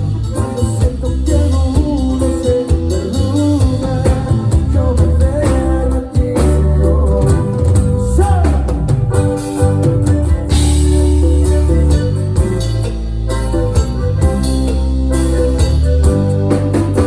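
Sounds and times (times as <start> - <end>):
live band playing: 0.0 - 17.0
person singing: 0.6 - 8.9.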